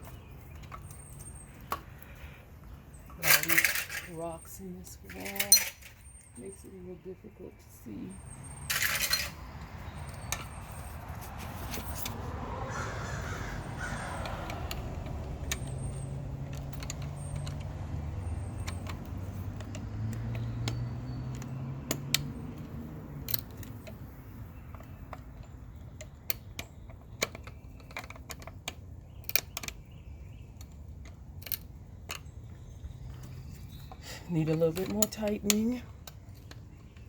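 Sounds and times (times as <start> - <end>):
metal parts clicking and clinking: 2.9 - 6.6, 8.4 - 12.2, 14.2 - 24.0, 24.7 - 29.8, 30.6 - 37.0.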